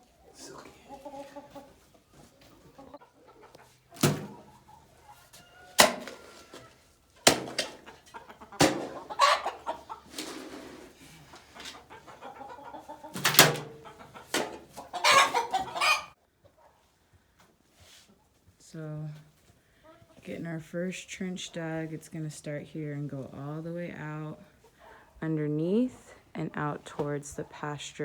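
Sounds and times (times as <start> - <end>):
chicken calls: 0.0 - 17.0
chickens clucking: 0.0 - 18.5, 19.4 - 20.4.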